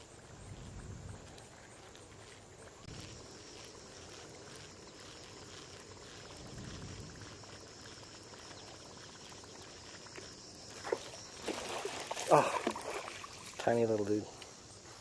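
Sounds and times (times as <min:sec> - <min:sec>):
fishing reel ticking: 0:02.9 - 0:11.4.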